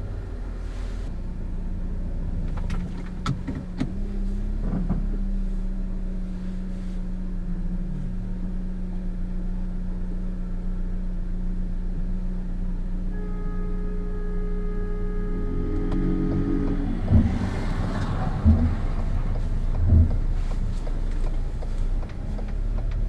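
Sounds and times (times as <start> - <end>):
vehicle engine humming: 0.0 - 23.0.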